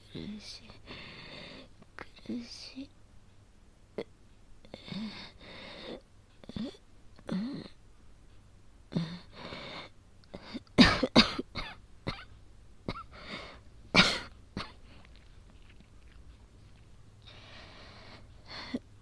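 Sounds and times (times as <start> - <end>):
heavy breathing: 0.8 - 1.7, 4.7 - 6.0, 13.1 - 13.7, 17.2 - 18.9
woman coughing: 6.6 - 7.8, 10.5 - 12.3, 12.9 - 13.2, 14.0 - 14.8.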